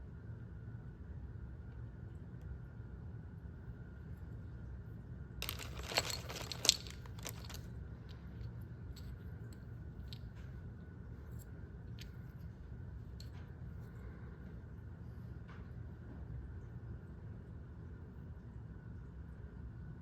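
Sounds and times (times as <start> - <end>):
steady low hum: 0.0 - 20.0
packaging rustling and clicking: 5.4 - 7.6.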